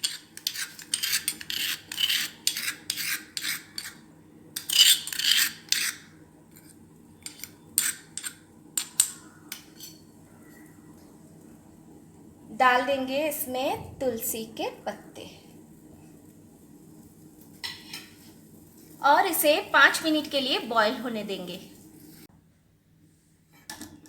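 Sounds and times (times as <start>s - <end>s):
spoon scraping a bowl: 0.0s - 10.6s, 17.6s - 18.3s.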